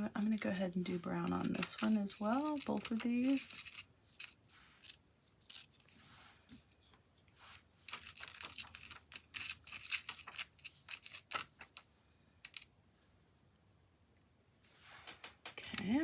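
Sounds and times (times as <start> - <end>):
craft supplies being handled: 0.0 - 11.8, 12.4 - 12.6.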